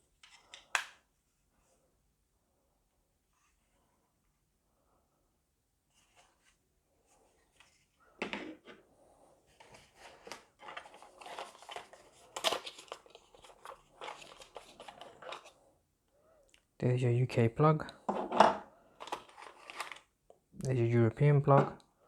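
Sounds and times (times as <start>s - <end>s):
packaging rustling and crinkling: 9.5s - 15.6s, 18.9s - 20.2s.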